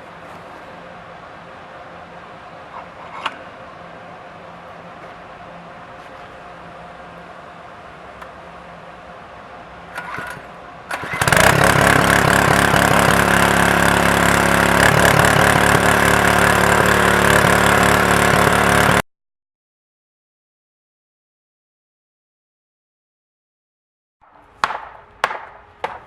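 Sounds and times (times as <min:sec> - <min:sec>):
engine starter rasp: 0:09.9 - 0:13.4
small petrol engine running: 0:09.9 - 0:19.0.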